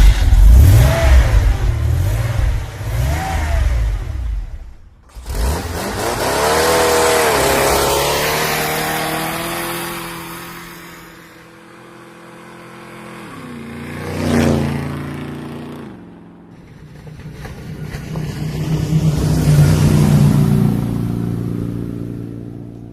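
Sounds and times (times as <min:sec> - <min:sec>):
vehicle engine revving: 0:00.0 - 0:22.9
vehicle passing close by: 0:05.2 - 0:22.9.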